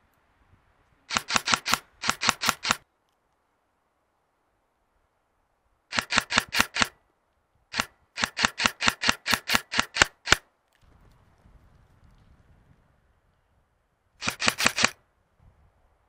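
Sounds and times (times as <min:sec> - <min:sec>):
airsoft gun shots: 0:01.1 - 0:02.8, 0:05.9 - 0:06.9, 0:07.7 - 0:10.4, 0:14.2 - 0:15.0.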